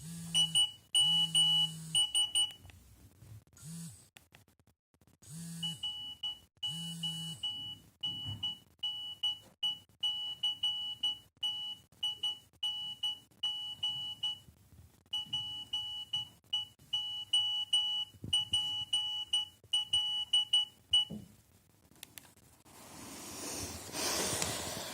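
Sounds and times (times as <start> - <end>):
high electronic phone beeps: 0.3 - 2.6, 5.6 - 14.4, 15.2 - 21.2.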